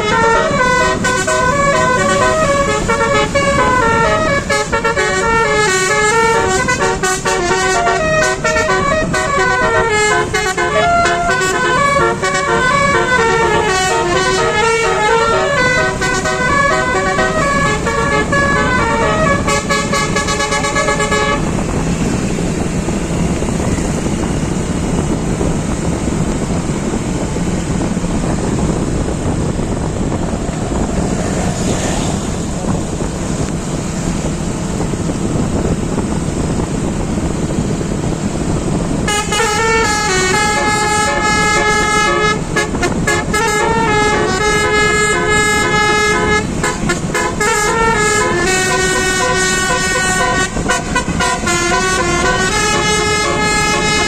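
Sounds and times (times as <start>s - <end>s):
musical bus horn playing a tune: 0.0s - 22.7s, 38.5s - 54.0s
engine and road noise: 0.0s - 54.0s.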